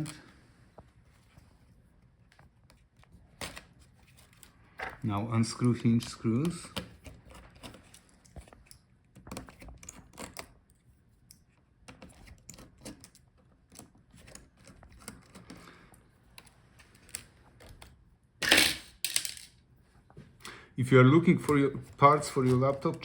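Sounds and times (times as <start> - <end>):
small parts clattering: 18.4 - 19.6.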